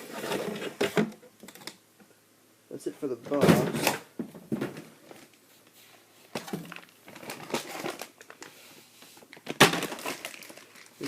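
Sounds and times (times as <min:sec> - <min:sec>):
plastic packaging crinkling: 0:06.4 - 0:08.6, 0:09.2 - 0:11.0.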